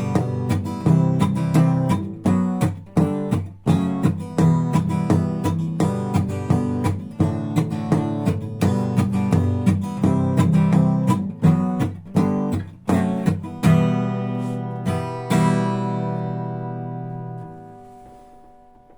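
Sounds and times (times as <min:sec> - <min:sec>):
knocks on guitar body: 0:00.0 - 0:13.7
acoustic guitar strumming: 0:00.0 - 0:18.9.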